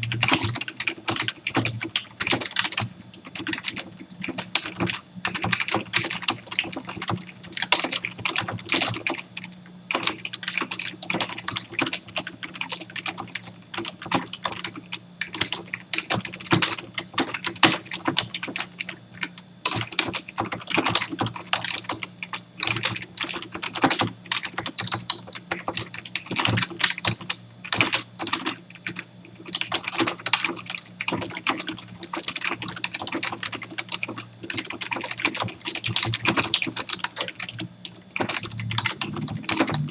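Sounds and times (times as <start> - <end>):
steady low hum: 0.0 - 2.2, 36.8 - 39.9
fast typing on keyboard: 0.0 - 39.9.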